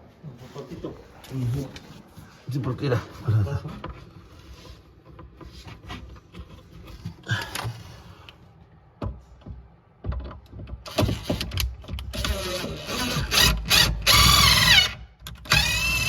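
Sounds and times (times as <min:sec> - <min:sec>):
knocks and clicks of cabinet fitting: 0:09.0 - 0:12.1.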